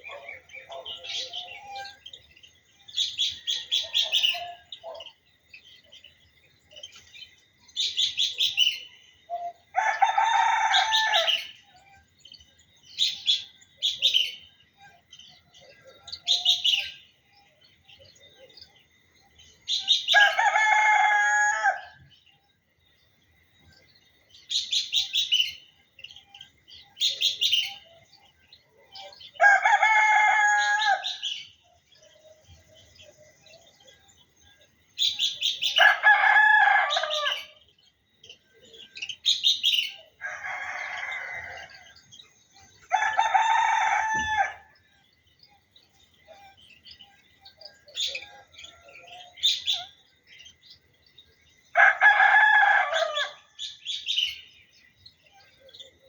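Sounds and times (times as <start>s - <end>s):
bird chirping: 0.0s - 56.0s
rooster crowing: 9.7s - 11.6s, 20.1s - 22.0s, 29.2s - 31.2s, 35.7s - 37.6s, 40.2s - 42.0s, 42.8s - 44.8s, 51.8s - 53.6s.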